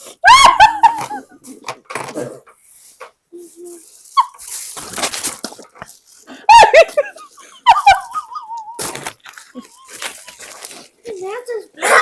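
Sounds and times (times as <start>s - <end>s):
people laughing and shrieking: 0.2s - 1.4s, 6.4s - 8.9s.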